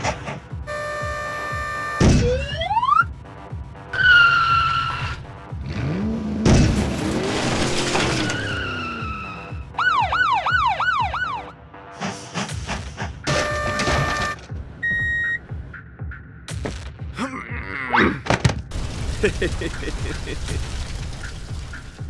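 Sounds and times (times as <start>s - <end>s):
background music: 0.0s - 20.6s
cartoon vehicle rush with sliding tones: 4.0s - 9.4s
warbling siren: 8.3s - 11.5s.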